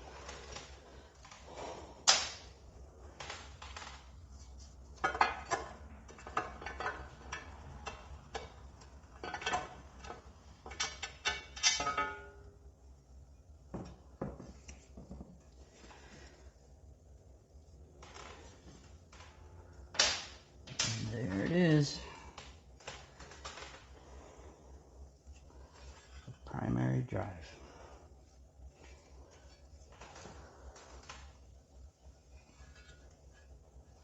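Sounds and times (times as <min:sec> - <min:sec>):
metal tools clinking and clanking: 0:09.2 - 0:12.5.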